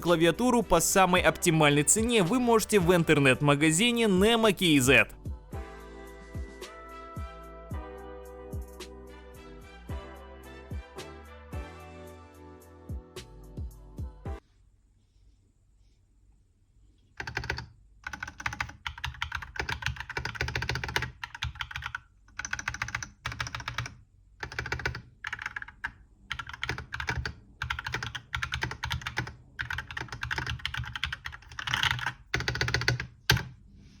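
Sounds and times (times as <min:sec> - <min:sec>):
mechanical keyboard key clacks: 0:17.2 - 0:33.5.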